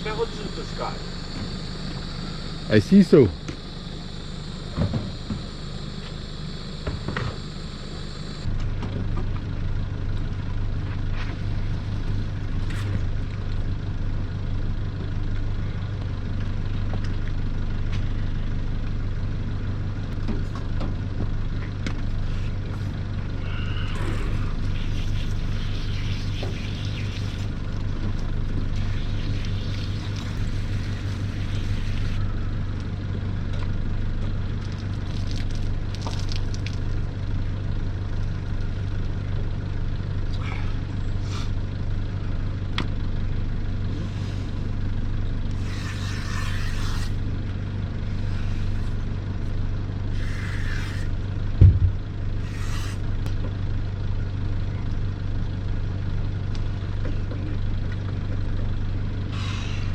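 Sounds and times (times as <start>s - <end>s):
engine humming: 0.0s - 59.9s
thump: 51.6s - 52.0s.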